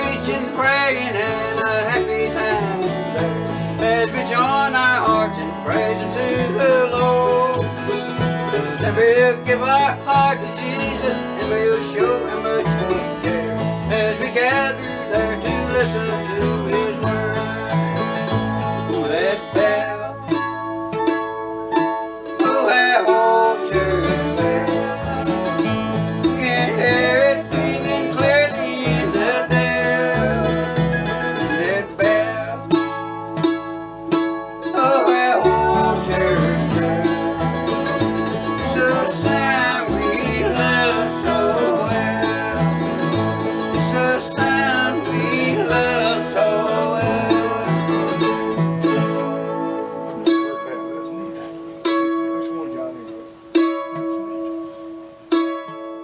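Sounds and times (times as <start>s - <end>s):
bass line: 0.0s - 55.5s
bluegrass string band playing: 0.0s - 56.0s.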